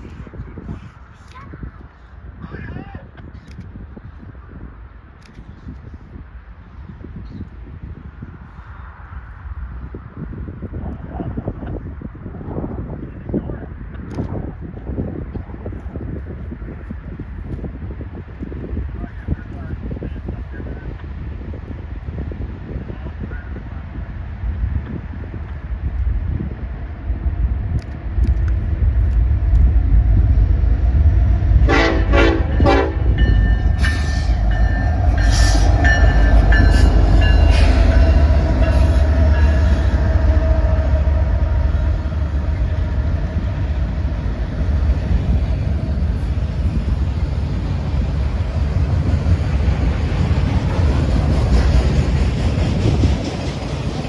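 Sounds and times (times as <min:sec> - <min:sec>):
freight train rumbling: 0:00.0 - 0:54.0
locomotive air horn blasts: 0:31.6 - 0:34.5.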